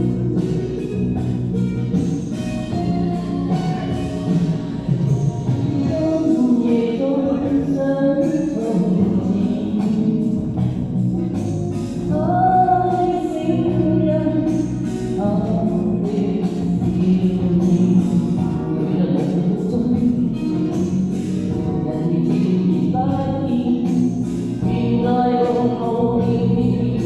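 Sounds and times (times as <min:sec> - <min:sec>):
karaoke backing track: 0:00.0 - 0:27.0
person singing pop ballad with echo: 0:00.0 - 0:27.0.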